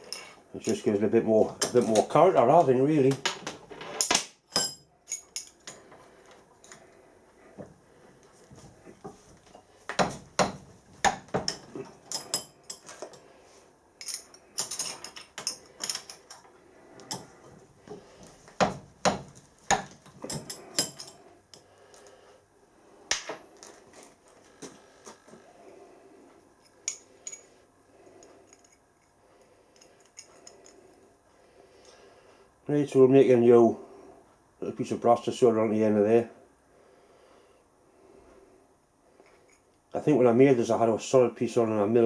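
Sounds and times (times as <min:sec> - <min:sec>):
metal parts and tools clinking: 0:00.0 - 0:01.0, 0:01.6 - 0:06.9, 0:11.3 - 0:13.2, 0:14.0 - 0:17.4, 0:19.7 - 0:22.0, 0:26.6 - 0:27.5, 0:28.2 - 0:29.1, 0:29.7 - 0:30.9.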